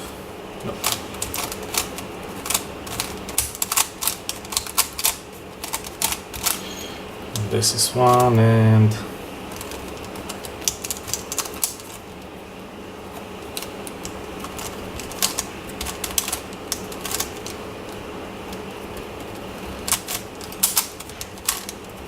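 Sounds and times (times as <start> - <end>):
puzzle cube layers clicking: 13.6 - 17.6, 19.8 - 21.8.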